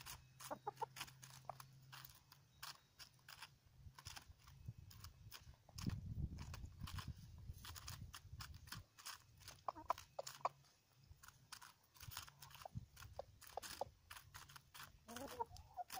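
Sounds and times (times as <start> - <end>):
roosters pecking lettuce: 0.0 - 15.9
soft clucks: 0.4 - 1.6, 9.5 - 10.6, 15.1 - 15.9.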